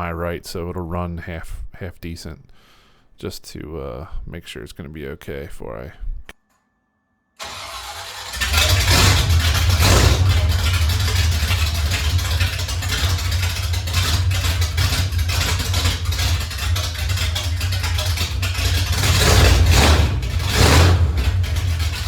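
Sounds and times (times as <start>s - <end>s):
engine cranking on starter: 7.4s - 22.0s
engine running loudly: 7.4s - 22.0s.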